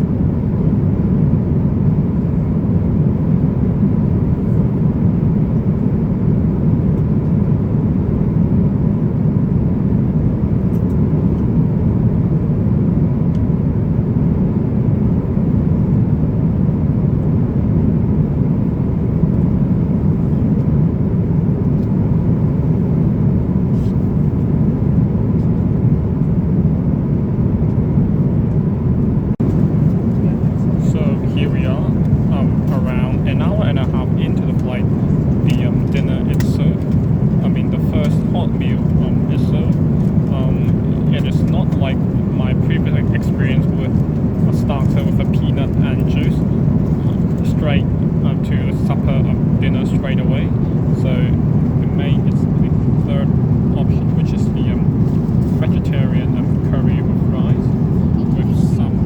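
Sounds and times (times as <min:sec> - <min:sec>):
aircraft cabin engine and airflow rush: 0:00.0 - 0:59.0.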